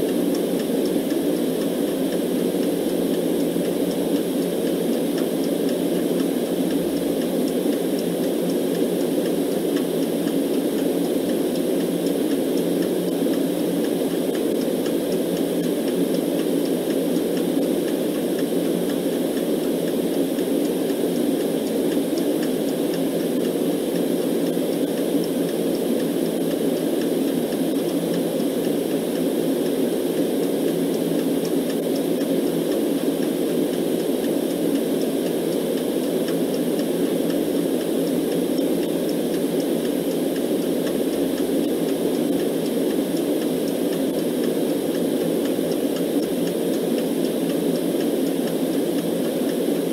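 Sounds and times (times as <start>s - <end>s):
clock ticking faintly: 0.0s - 49.9s
muffled white noise: 0.0s - 49.9s.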